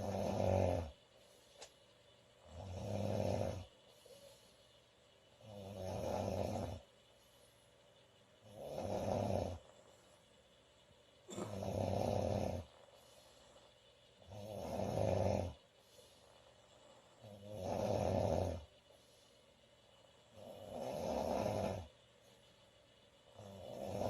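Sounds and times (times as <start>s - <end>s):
woman snoring loudly: 0.0s - 0.9s, 2.5s - 3.7s, 5.4s - 6.8s, 8.5s - 9.6s, 11.3s - 12.7s, 14.2s - 15.6s, 17.2s - 18.6s, 20.4s - 21.9s, 23.4s - 24.0s
quiet breathing: 0.0s - 24.0s.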